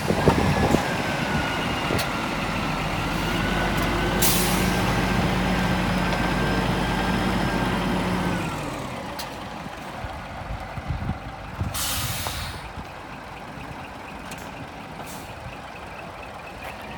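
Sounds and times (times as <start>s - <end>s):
diesel truck engine idling: 0.0s - 16.9s
air brake hiss: 4.2s - 4.8s, 11.7s - 12.7s.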